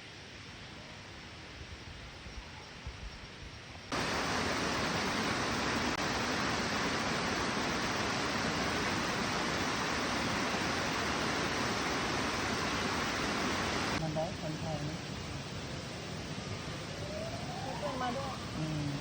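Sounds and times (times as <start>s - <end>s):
waterfall rushing: 3.9s - 19.0s.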